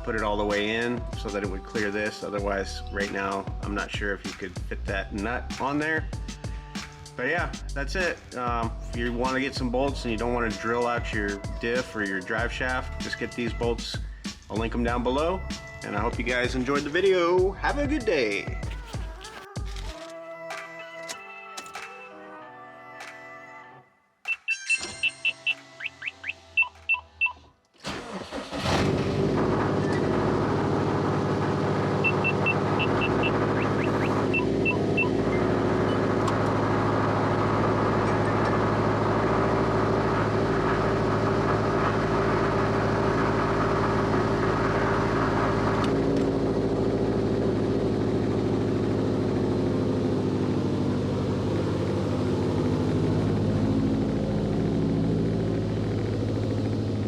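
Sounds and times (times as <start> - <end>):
car engine starting and running: 0.0 - 18.8, 24.8 - 57.0
high electronic chime beeps: 24.3 - 27.3.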